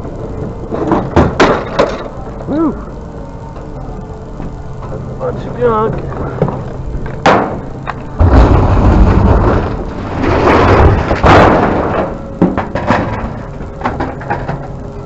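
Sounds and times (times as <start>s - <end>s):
scrap metal crashing down: 8.2s - 14.7s.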